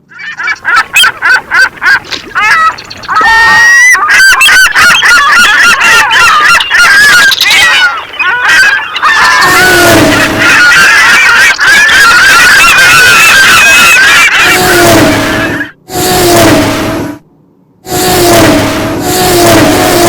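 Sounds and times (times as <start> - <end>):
geese honking: 0.1 - 15.7.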